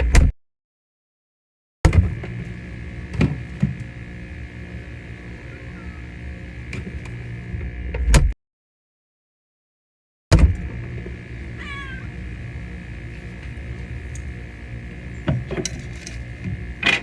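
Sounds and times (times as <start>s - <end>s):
cat meowing: 5.5s - 6.1s, 11.6s - 12.1s.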